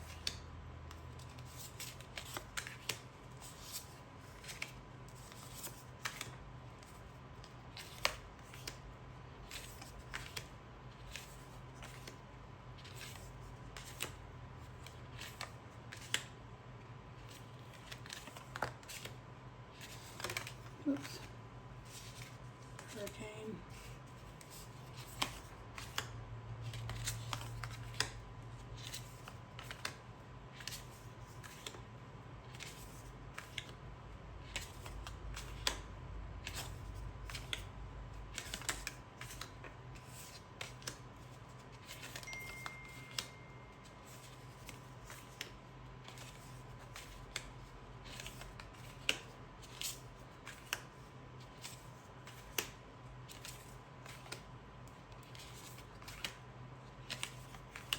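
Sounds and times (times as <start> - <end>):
cards clicking and snapping: 7.4 - 8.8, 19.8 - 21.3, 24.5 - 26.1, 26.7 - 28.2, 28.8 - 30.0, 30.6 - 31.8, 34.4 - 37.7, 38.3 - 41.0, 44.1 - 50.9, 51.5 - 54.4, 55.2 - 56.4, 57.0 - 57.9.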